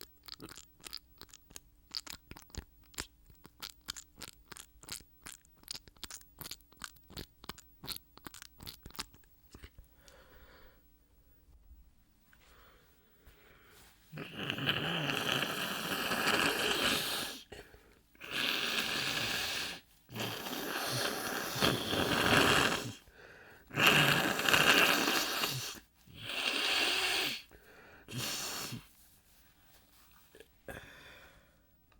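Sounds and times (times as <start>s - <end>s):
person breathing loudly: 9.9s - 10.9s, 22.8s - 23.7s, 26.4s - 28.9s, 30.7s - 31.7s.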